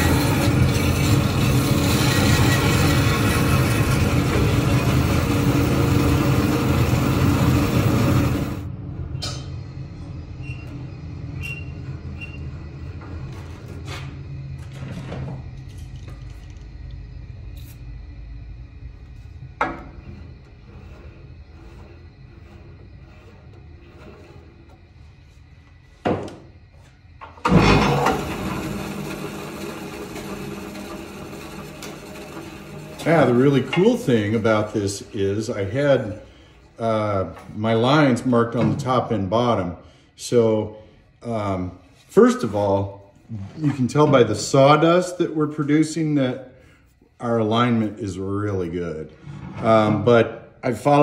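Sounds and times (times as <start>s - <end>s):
bandsaw cutting wood: 0.0s - 8.6s, 27.5s - 34.7s
bandsaw running with low hum: 0.0s - 38.6s
bandsaw starting with a clunk: 27.3s - 34.0s.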